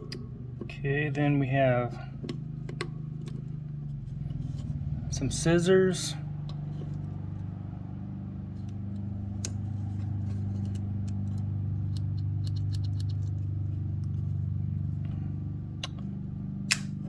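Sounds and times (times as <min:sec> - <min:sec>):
low motor-like hum: 0:00.0 - 0:17.0
small scissors clicking: 0:16.7 - 0:17.0.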